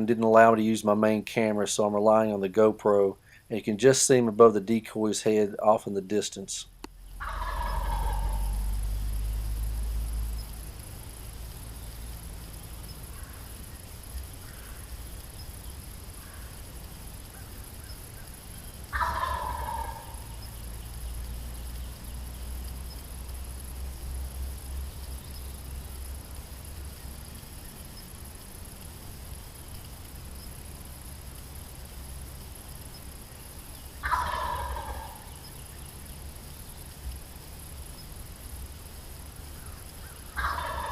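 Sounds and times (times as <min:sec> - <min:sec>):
distant turkey gobbling: 0:07.1 - 0:08.9, 0:17.2 - 0:20.5, 0:34.0 - 0:35.6, 0:39.4 - 0:40.9.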